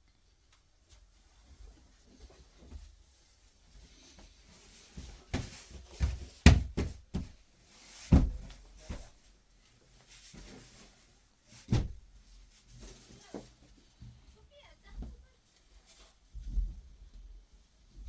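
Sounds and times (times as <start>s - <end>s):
knocks and thuds: 5.3s - 7.3s, 8.1s - 8.5s.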